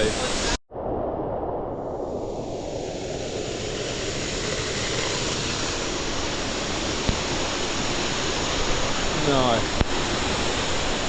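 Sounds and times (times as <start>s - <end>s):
waterfall rushing: 3.1s - 11.0s.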